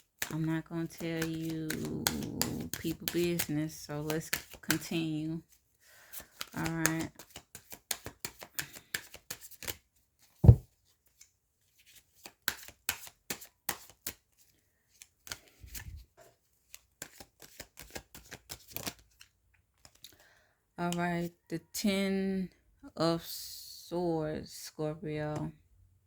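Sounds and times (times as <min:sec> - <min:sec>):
cards being shuffled: 0:00.2 - 0:04.9, 0:06.1 - 0:11.2, 0:11.8 - 0:15.8, 0:16.6 - 0:20.1
dull thump: 0:10.4 - 0:10.6.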